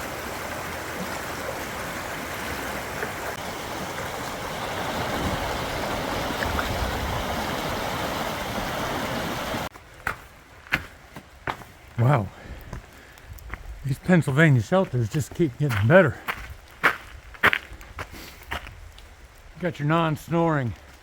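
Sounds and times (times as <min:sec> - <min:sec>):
creek rushing: 0:00.0 - 0:12.3
footsteps on a trail: 0:09.7 - 0:19.5, 0:20.7 - 0:21.0.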